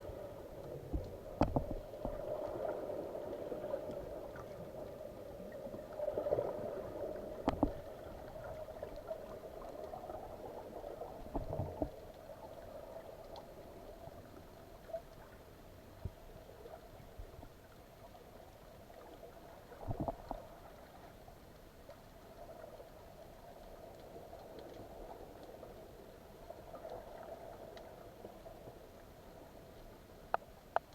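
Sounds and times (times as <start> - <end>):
underwater mid-pitched hum: 0.0 - 30.9.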